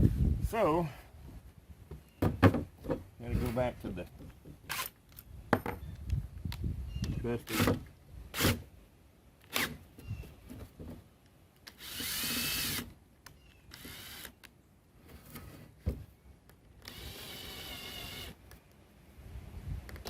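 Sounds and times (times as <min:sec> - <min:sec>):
power drill motor whine: 0:11.8 - 0:12.8, 0:13.7 - 0:14.4, 0:16.8 - 0:18.4.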